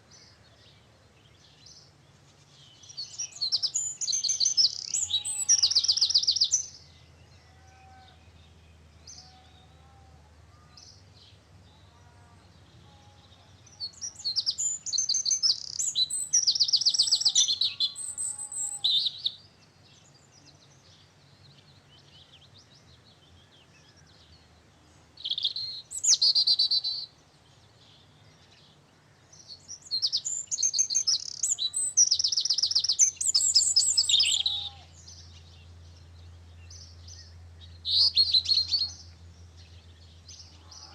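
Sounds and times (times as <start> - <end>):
faint calls of other birds: 0.0 - 40.9
songbird trilling: 2.7 - 7.0, 13.0 - 19.4, 25.2 - 27.2, 29.4 - 40.9.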